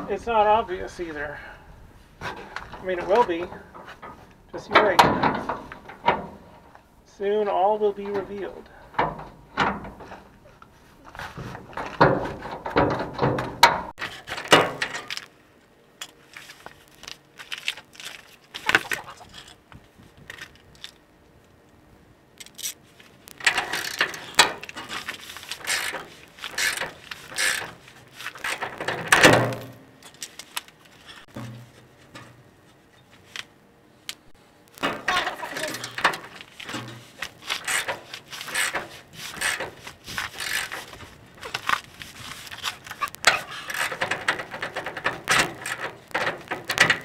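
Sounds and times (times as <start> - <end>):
hand tools clicking and clanking: 2.2 - 6.8, 8.0 - 15.3, 22.4 - 32.4, 34.8 - 47.0.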